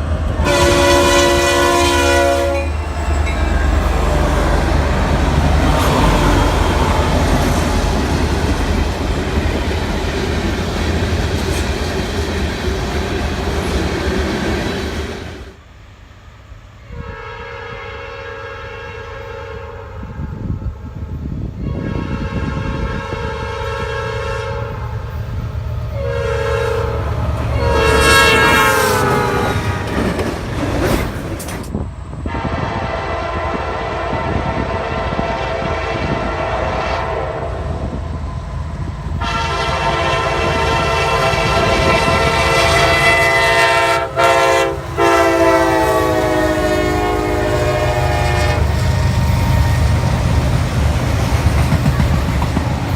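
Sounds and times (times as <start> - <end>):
train rumbling and clattering: 0.0 - 15.7, 19.9 - 52.9
locomotive air horn blasts: 0.4 - 8.7, 16.8 - 21.0, 21.6 - 25.1, 25.9 - 30.0, 32.2 - 38.0, 39.2 - 50.0.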